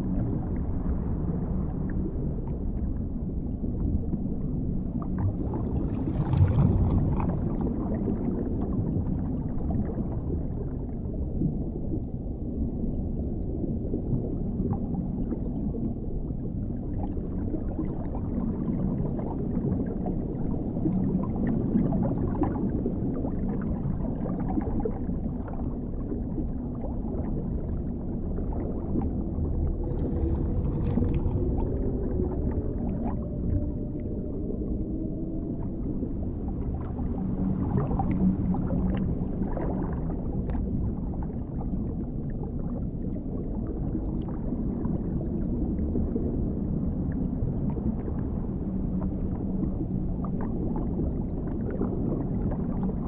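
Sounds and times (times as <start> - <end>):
deep underwater rumble: 0.0 - 53.0
faint clicks and crackles: 28.4 - 34.2.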